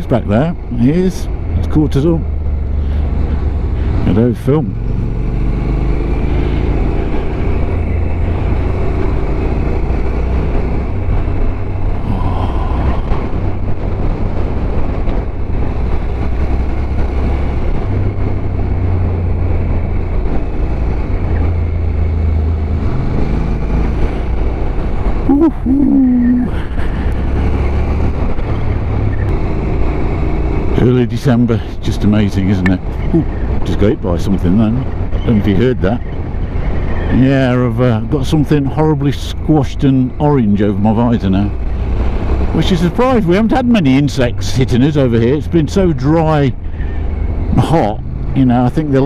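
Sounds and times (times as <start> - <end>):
wind rush on microphone: 4.9 - 30.8.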